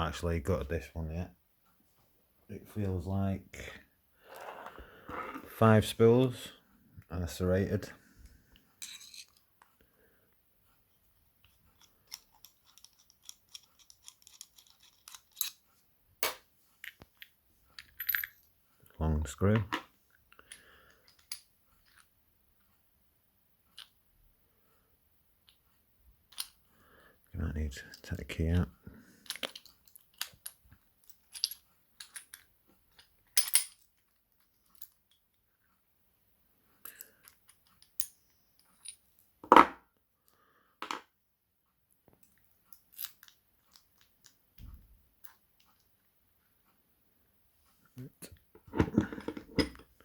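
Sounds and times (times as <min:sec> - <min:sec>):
metallic clicks and scrapes: 0:08.8 - 0:09.4, 0:11.4 - 0:15.8.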